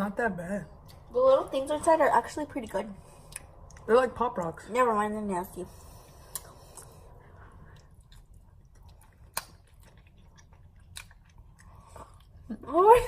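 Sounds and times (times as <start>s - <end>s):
quiet chewing: 0.8s - 1.1s, 2.6s - 4.6s, 5.6s - 12.7s.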